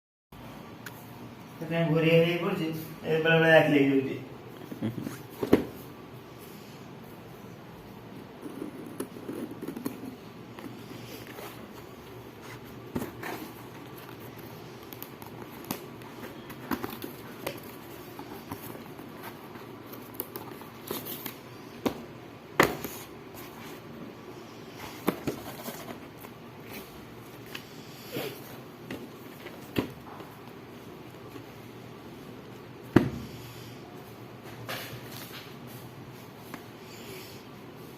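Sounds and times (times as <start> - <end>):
box and packaging being handled: 8.2 - 31.7.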